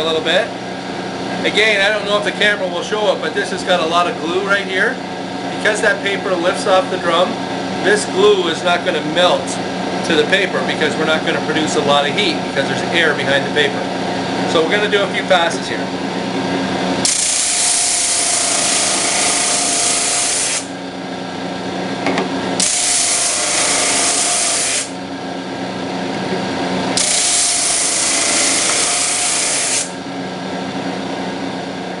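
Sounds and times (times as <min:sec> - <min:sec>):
drum sander motor hum: 0:00.0 - 0:32.0
sanding drum grinding wood hiss: 0:22.6 - 0:24.9, 0:27.0 - 0:29.9.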